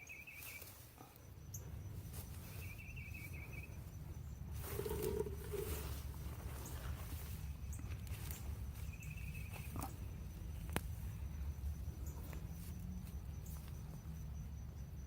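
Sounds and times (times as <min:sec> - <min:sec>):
faint insect drone: 0:00.0 - 0:15.0
steady low rumble: 0:01.2 - 0:15.0
digging through soil: 0:04.5 - 0:08.7.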